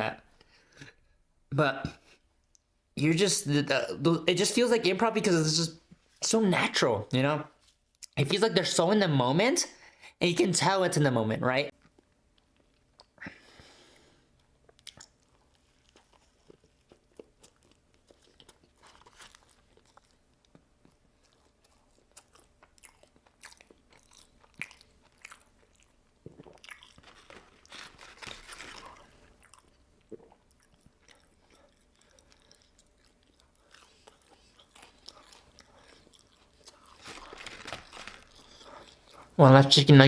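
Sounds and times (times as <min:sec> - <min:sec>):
person chewing crunchy food: 0:14.2 - 0:39.4.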